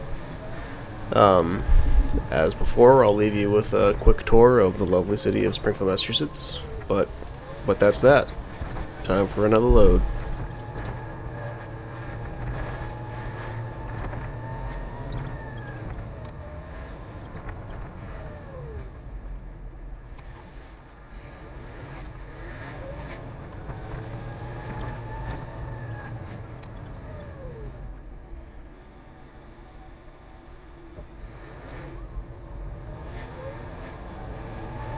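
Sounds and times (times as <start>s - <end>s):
engine whine rising and falling: 0.0s - 10.4s
truck diesel engine running: 0.0s - 10.4s.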